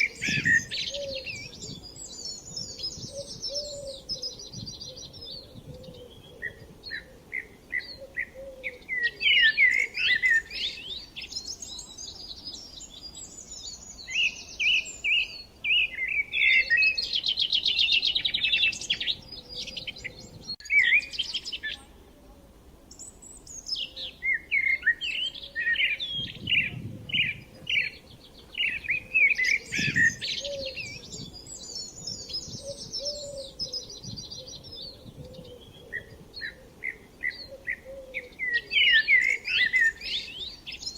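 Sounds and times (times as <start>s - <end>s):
songbirds singing: 0.0s - 40.9s.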